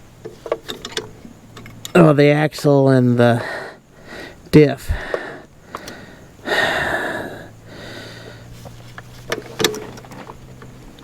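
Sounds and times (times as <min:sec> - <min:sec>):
low steady hum: 0:00.0 - 0:11.0
breathy exhale: 0:03.4 - 0:08.6.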